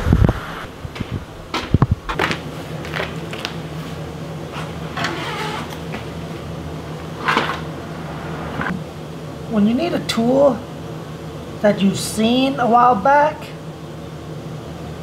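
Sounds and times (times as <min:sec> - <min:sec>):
low hum: 0:00.0 - 0:11.6
tools clattering and scraping: 0:07.1 - 0:07.7.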